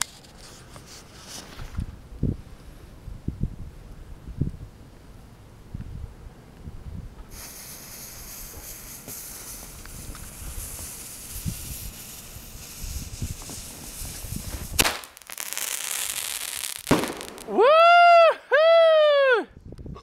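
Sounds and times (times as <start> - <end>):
firework hissing: 7.3 - 17.7
firework bang: 7.3 - 17.8.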